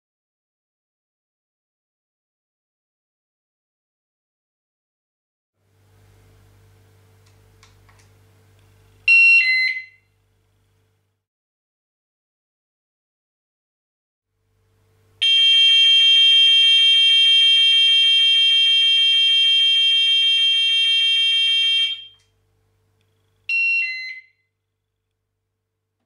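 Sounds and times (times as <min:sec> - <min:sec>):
smoke detector siren: 0:15.2 - 0:22.3, 0:23.5 - 0:24.4.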